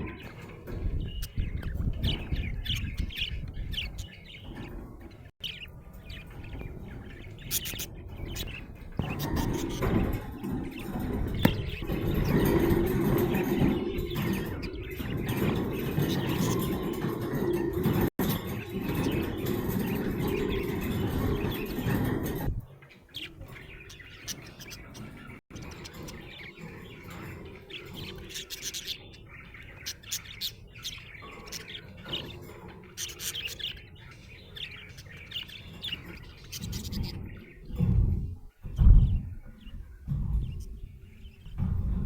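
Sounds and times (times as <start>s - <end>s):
budgerigar chirping: 7.4s - 10.2s.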